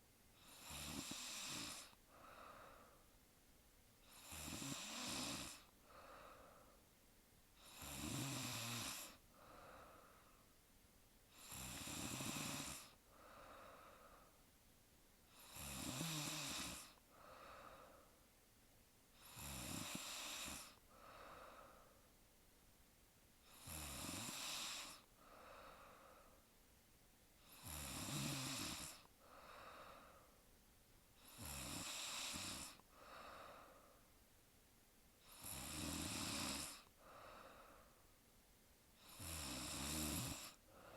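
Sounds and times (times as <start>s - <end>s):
woman snoring: 0.4s - 2.9s, 4.0s - 6.4s, 7.6s - 9.8s, 11.3s - 14.3s, 15.3s - 17.9s, 19.2s - 21.9s, 23.4s - 26.0s, 27.4s - 30.2s, 31.2s - 33.8s, 35.2s - 37.8s, 39.0s - 40.9s
soft breath: 1.6s - 3.2s, 5.4s - 7.0s, 9.0s - 10.6s, 12.8s - 14.6s, 16.6s - 18.4s, 20.4s - 22.3s, 24.8s - 26.6s, 28.8s - 30.6s, 31.2s - 34.2s, 36.6s - 38.3s, 40.4s - 40.9s.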